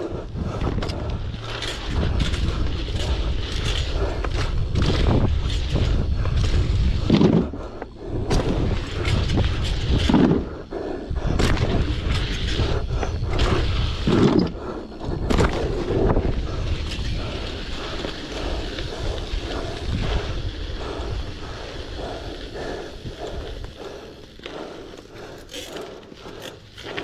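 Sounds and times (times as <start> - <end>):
wind buffeting microphone: 0.0 - 25.4
bicycle tyres rumbling: 0.0 - 27.0
bicycle knocks and thumps: 1.8 - 7.5.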